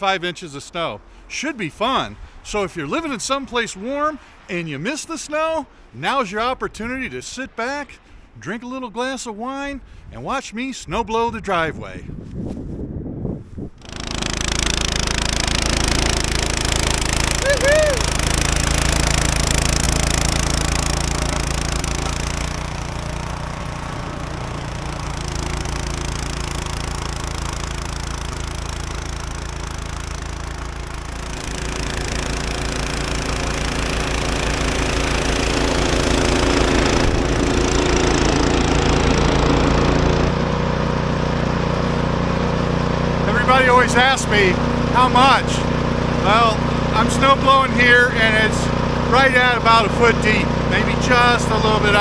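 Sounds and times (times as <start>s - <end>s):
broad rushing noise: 13.8s - 26.8s
snow blower engine running: 13.8s - 52.0s.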